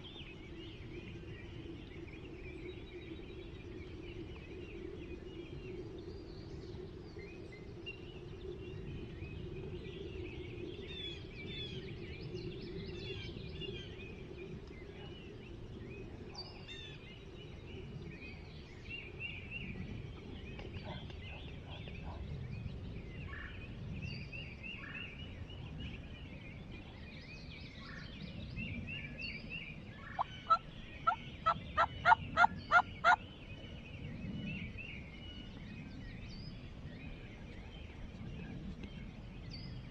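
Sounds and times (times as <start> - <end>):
songbirds chirping: 0.0 - 39.9
turkey yelping: 30.2 - 30.6, 31.8 - 33.2.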